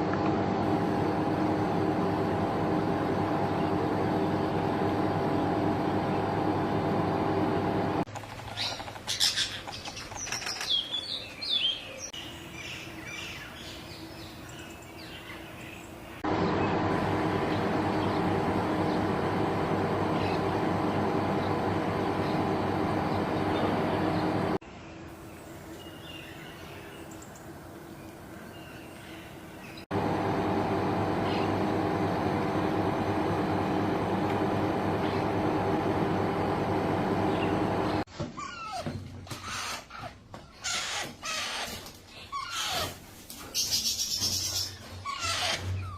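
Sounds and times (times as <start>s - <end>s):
mechanical hum: 0.0s - 45.9s.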